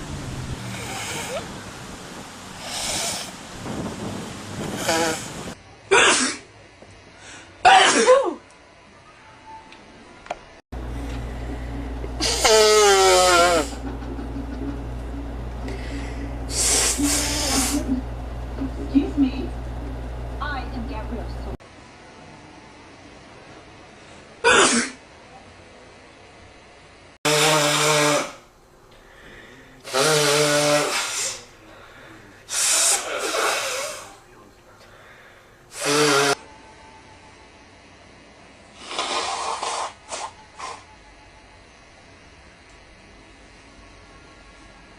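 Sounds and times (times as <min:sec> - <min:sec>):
person blowing nose: 0:00.8 - 0:01.5, 0:02.6 - 0:03.4, 0:04.6 - 0:05.5, 0:12.2 - 0:13.8, 0:15.8 - 0:18.0, 0:27.3 - 0:28.4, 0:29.8 - 0:31.5, 0:32.5 - 0:34.2, 0:35.7 - 0:36.4, 0:38.8 - 0:40.9
loud voiced sneeze: 0:05.9 - 0:06.5, 0:07.6 - 0:08.4, 0:24.4 - 0:25.0, 0:32.5 - 0:34.2
steady low hum: 0:10.0 - 0:27.2, 0:28.3 - 0:30.0, 0:30.8 - 0:38.9.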